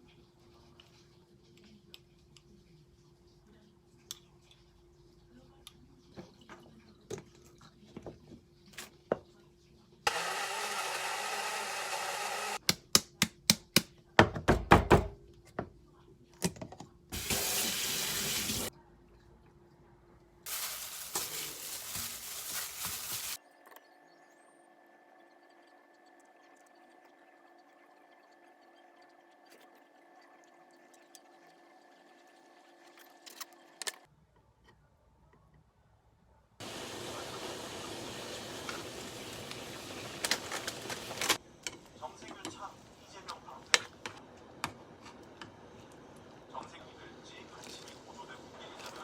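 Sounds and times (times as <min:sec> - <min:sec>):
kitchen tap running: 0:17.2 - 0:18.7, 0:20.5 - 0:23.4, 0:36.6 - 0:41.4.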